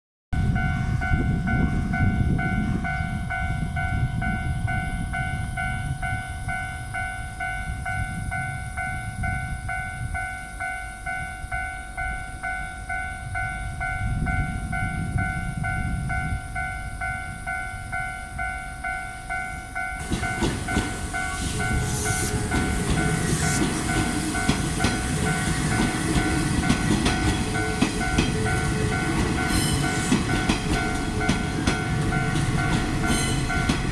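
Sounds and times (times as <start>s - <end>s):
level crossing alarm bell: 0.4s - 33.9s
train wheels rumbling over rail joints: 19.3s - 33.9s.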